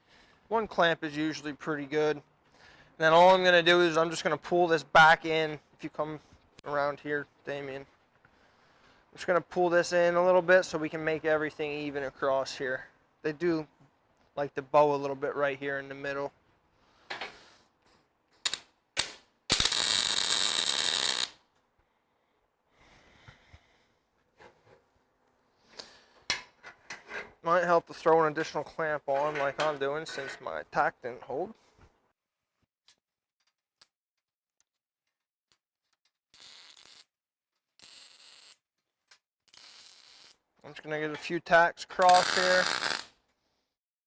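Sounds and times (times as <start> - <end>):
welder arc crackling buzz: 18.5 - 21.4, 36.4 - 37.0, 37.8 - 38.6, 39.5 - 40.3, 42.0 - 43.1.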